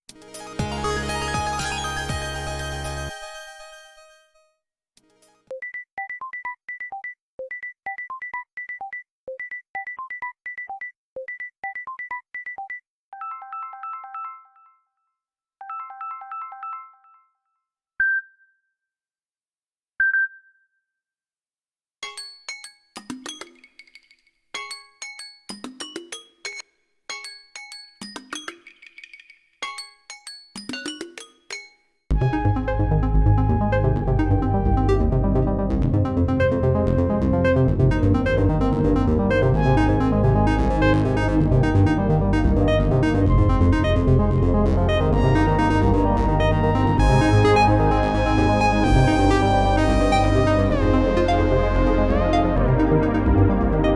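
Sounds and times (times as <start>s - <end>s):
electronic ringtone melody: 5.5s - 14.9s, 15.6s - 17.4s
ringtone with struck notes: 22.0s - 24.0s, 24.6s - 31.9s.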